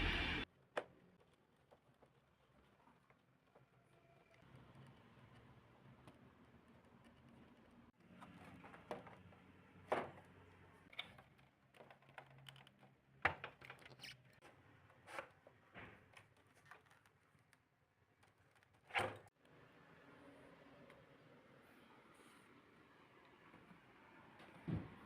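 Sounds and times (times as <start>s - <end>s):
plastic parts clicking and knocking: 10.9s - 14.3s.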